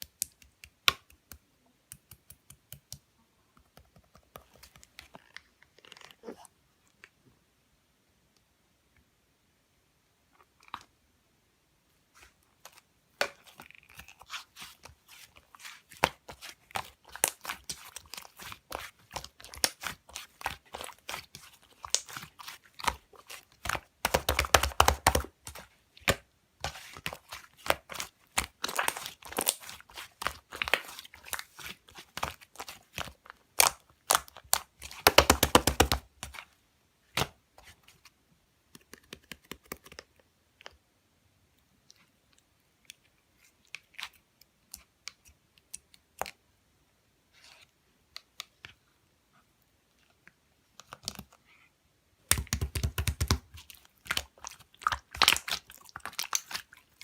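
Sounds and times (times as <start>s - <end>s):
slime crackling and popping: 16.0s - 36.4s, 52.3s - 56.8s.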